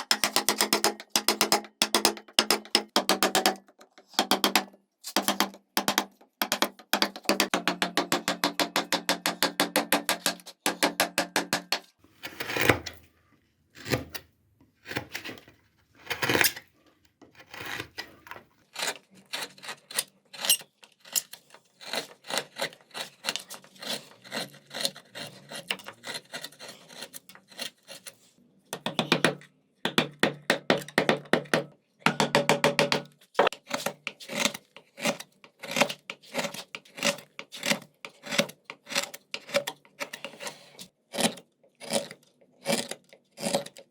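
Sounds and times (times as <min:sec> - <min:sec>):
hand tool scraping wood: 0:16.0 - 0:16.7, 0:17.3 - 0:29.3, 0:32.7 - 0:43.9.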